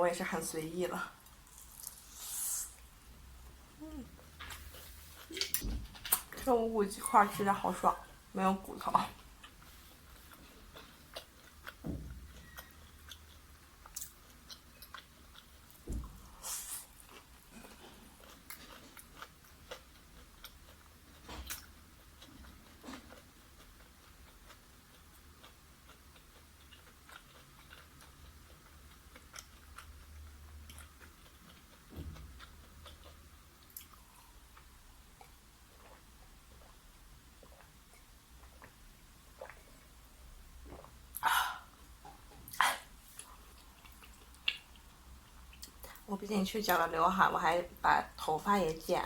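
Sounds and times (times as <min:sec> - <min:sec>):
chewing fried chicken: 0:07.3 - 0:40.0, 0:41.9 - 0:46.1
soft thumps: 0:15.8 - 0:16.2.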